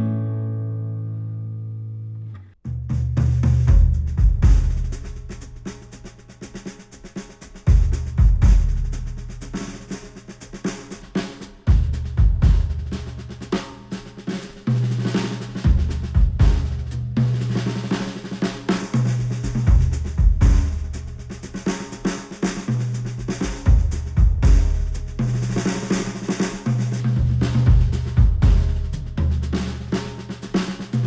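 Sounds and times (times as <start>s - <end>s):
deep held bass line: 23.1s - 25.6s, 27.1s - 30.0s.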